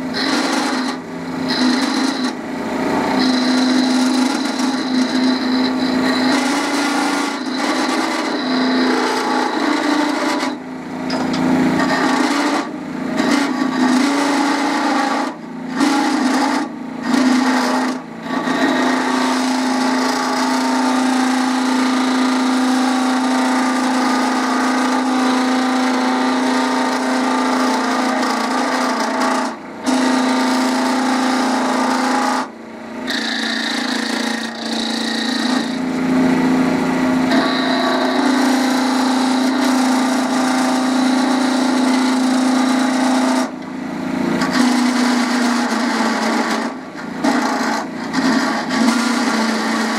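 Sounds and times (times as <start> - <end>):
wood lathe motor hum: 0.0 - 43.6, 44.3 - 49.9
turning tool scraping wood: 3.1 - 32.5, 33.1 - 35.8.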